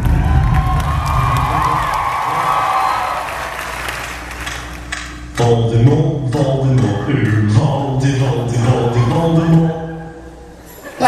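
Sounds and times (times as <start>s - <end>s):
loud music: 0.0s - 10.6s
low chant-like singing: 5.4s - 10.6s.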